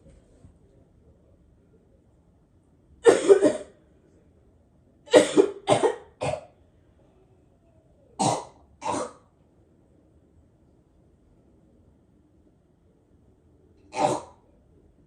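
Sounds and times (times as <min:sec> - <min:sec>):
person coughing: 0:03.0 - 0:03.7, 0:05.1 - 0:06.5.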